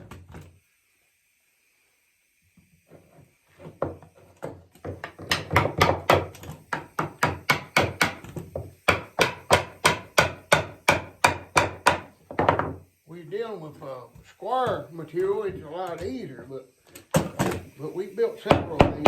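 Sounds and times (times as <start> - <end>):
hammer blows on wood: 5.2 - 12.7.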